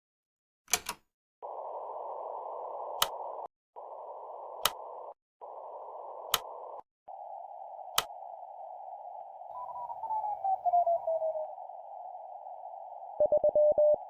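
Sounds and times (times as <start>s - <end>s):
narrow band radio static hiss: 1.4s - 14.0s
sharp clicks: 3.0s - 3.2s, 4.6s - 5.1s, 6.2s - 6.8s, 7.9s - 8.2s.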